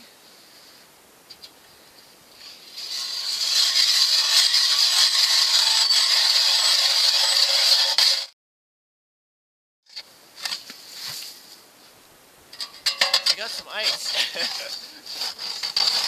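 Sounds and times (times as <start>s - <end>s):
ice auger grinding into ice: 2.6s - 8.3s, 13.7s - 16.0s.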